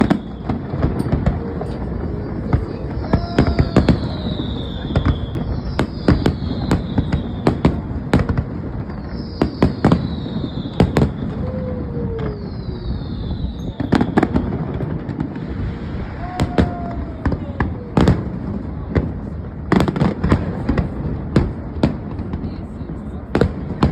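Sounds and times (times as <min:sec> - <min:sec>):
high whistle falling in pitch: 0:00.0 - 0:07.4, 0:09.0 - 0:14.4
fireworks bangs: 0:00.0 - 0:23.9.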